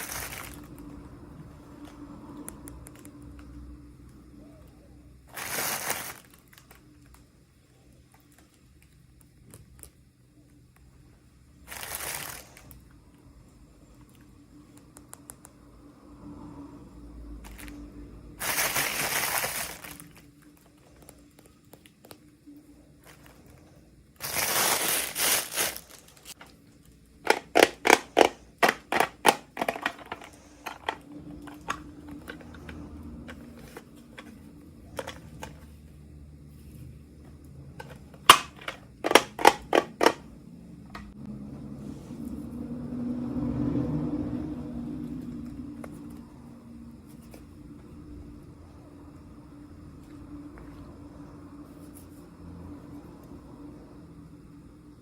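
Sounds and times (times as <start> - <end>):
packaging rustling: 0.0 - 0.8, 5.3 - 7.0, 11.7 - 12.8, 18.4 - 22.2, 24.2 - 26.4.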